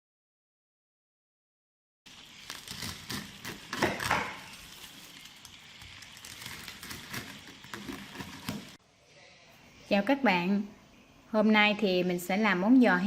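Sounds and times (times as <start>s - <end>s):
crackling hiss: 2.1s - 8.8s.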